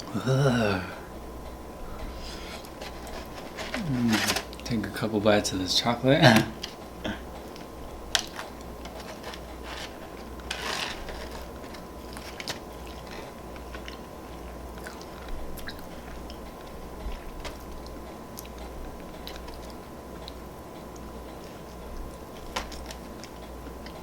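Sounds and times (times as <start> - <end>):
person chewing donut: 6.8 - 24.0.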